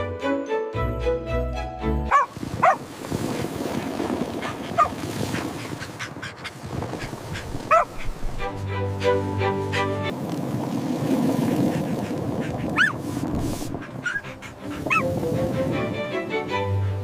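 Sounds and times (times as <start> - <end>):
background music: 0.0 - 2.3, 8.3 - 10.1, 14.0 - 17.0
steady rustling: 11.4 - 15.2
puppy yipping and whimpering: 12.8 - 13.0, 13.9 - 15.1.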